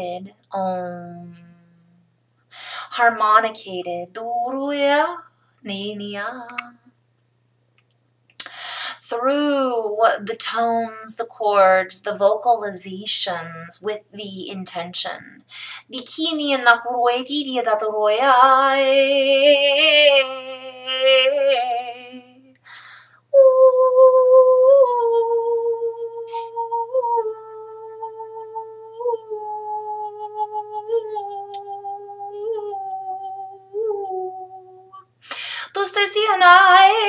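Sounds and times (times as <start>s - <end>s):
woman breathing: 2.5s - 3.0s, 8.4s - 9.0s, 15.5s - 15.9s, 22.6s - 23.3s, 35.2s - 35.8s
woman long high hum: 23.3s - 35.1s.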